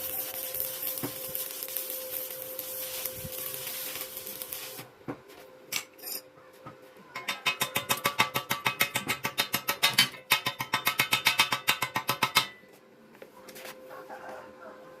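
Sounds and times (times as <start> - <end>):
arc welding crackling: 0.0 - 5.0
steady hum: 0.0 - 10.0.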